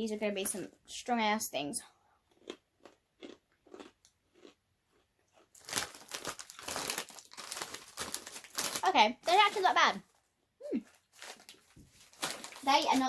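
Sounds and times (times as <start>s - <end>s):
pretzels being chewed: 2.2s - 8.8s.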